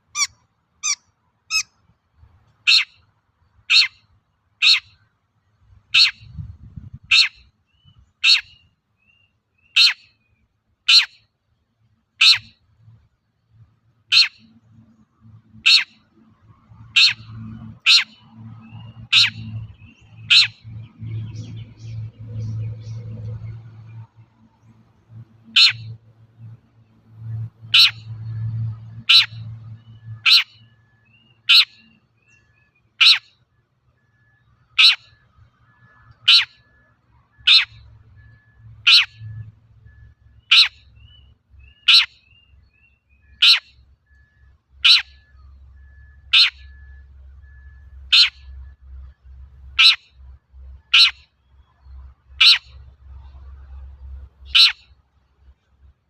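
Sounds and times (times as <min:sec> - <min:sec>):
bird giving sharp calls: 0:00.0 - 0:01.7, 0:02.7 - 0:03.0, 0:03.7 - 0:04.0, 0:04.6 - 0:05.0, 0:06.0 - 0:06.4, 0:07.0 - 0:07.5, 0:08.2 - 0:08.6, 0:09.6 - 0:10.1, 0:12.2 - 0:12.5, 0:14.1 - 0:14.5, 0:15.6 - 0:16.0, 0:16.8 - 0:19.6, 0:20.2 - 0:20.6, 0:25.5 - 0:26.0, 0:27.8 - 0:28.0, 0:29.0 - 0:29.4, 0:30.2 - 0:30.6, 0:31.5 - 0:31.9, 0:33.0 - 0:33.3, 0:34.8 - 0:35.2, 0:36.2 - 0:36.7, 0:37.4 - 0:37.8, 0:38.8 - 0:39.3, 0:40.4 - 0:40.9, 0:41.6 - 0:42.3, 0:43.2 - 0:43.7, 0:44.8 - 0:45.3, 0:46.3 - 0:46.7, 0:48.1 - 0:48.5, 0:49.8 - 0:50.1, 0:50.9 - 0:51.2, 0:52.4 - 0:52.7, 0:54.5 - 0:54.8.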